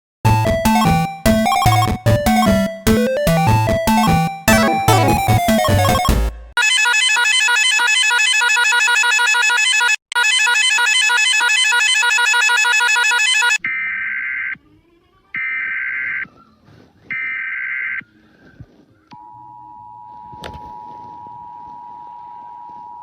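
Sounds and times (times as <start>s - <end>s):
fast-repeating electronic alarm tone: 4.5s - 6.5s.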